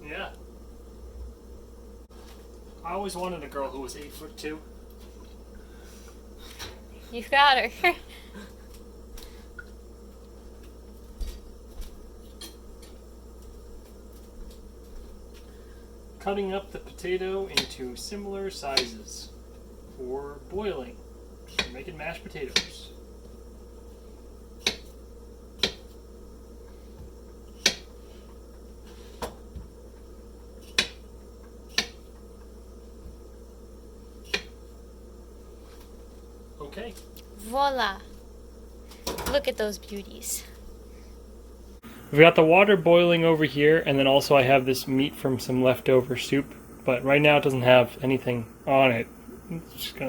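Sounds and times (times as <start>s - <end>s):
low hum: 39.6s - 50.0s.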